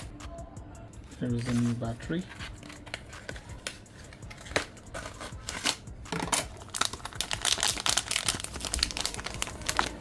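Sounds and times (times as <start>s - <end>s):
thin plastic crinkling: 2.6s - 10.0s.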